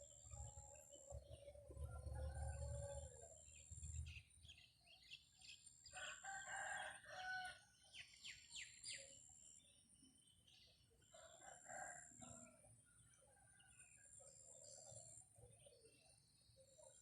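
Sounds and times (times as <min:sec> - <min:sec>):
faint rooster crowing: 0:01.8 - 0:03.6, 0:05.9 - 0:07.8, 0:11.1 - 0:12.7.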